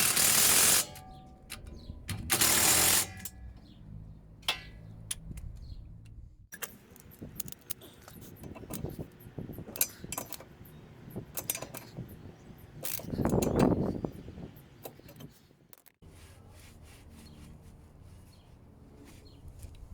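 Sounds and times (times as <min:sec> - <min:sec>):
metal parts clinking and rattling: 0:06.5 - 0:09.0, 0:11.2 - 0:12.0, 0:12.8 - 0:13.9.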